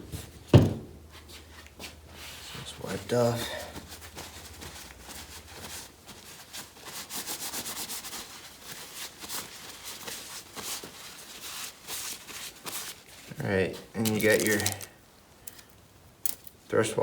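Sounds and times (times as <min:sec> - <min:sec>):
metal parts rubbing and scraping: 0:14.0 - 0:14.9.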